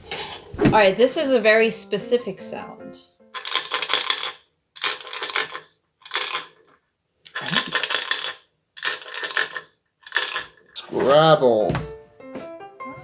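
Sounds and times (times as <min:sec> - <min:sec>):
small objects rattling in container: 0:03.4 - 0:10.8.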